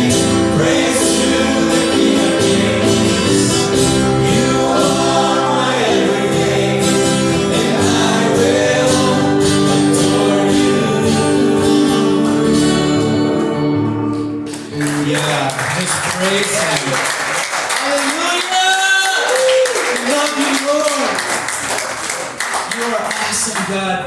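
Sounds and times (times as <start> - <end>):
voices singing together: 0.0 - 13.8
guitar and band: 0.0 - 17.3.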